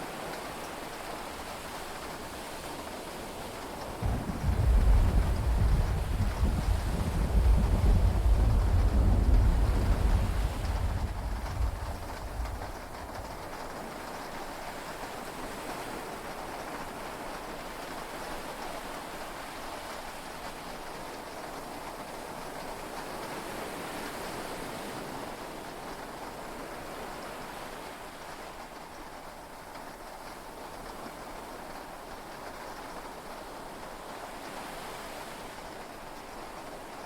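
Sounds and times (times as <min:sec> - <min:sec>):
heavy rain on a cabin roof: 0:00.0 - 0:37.0
deep rumble: 0:04.0 - 0:13.4.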